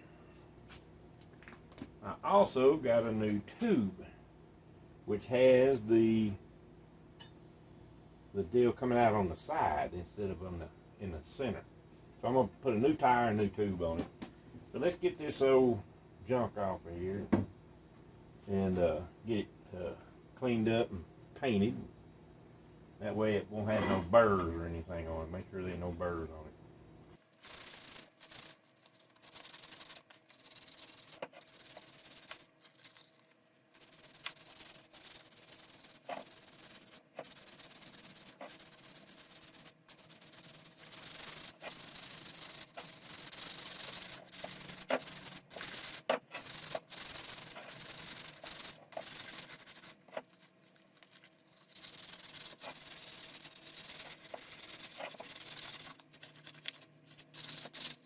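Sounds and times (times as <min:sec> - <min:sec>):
sanding metal rim scratching: 0:27.4 - 0:33.0, 0:33.7 - 0:50.5, 0:51.5 - 0:58.0.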